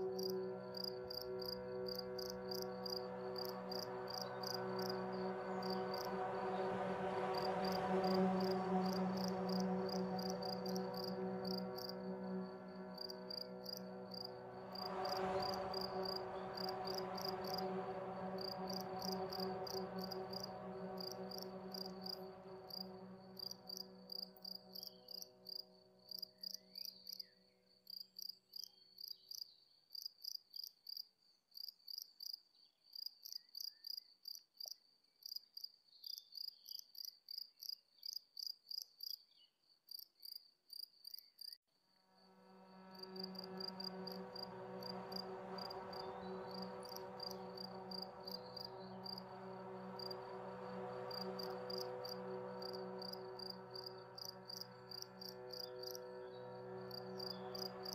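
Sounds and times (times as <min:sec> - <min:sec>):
crickets chirping: 0:00.0 - 0:27.3, 0:42.2 - 0:57.9
soft sustained drone chord: 0:00.0 - 0:27.8, 0:42.1 - 0:57.9.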